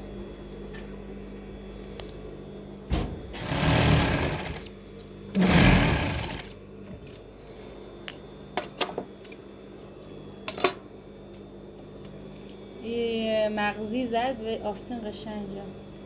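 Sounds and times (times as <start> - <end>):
sewing machine running: 3.4 - 4.7, 5.4 - 6.6.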